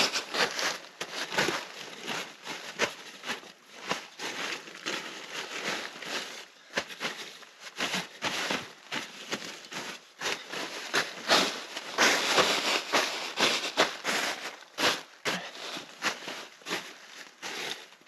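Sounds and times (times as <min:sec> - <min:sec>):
rustling of dry leaves and twigs: 0:00.0 - 0:18.0.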